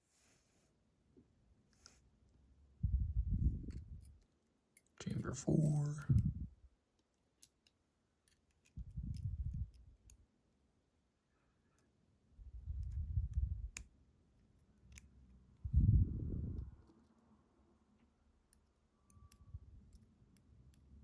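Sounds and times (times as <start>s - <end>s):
tweezers clicking on lock parts: 7.0s - 10.2s, 14.5s - 15.2s, 18.4s - 21.0s.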